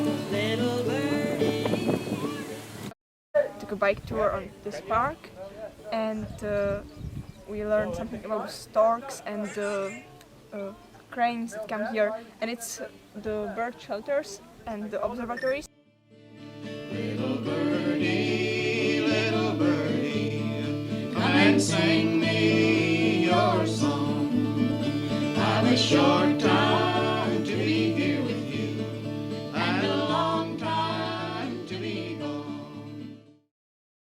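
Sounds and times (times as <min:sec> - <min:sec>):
song with guitar and singing: 0:00.0 - 0:02.6, 0:16.2 - 0:33.3.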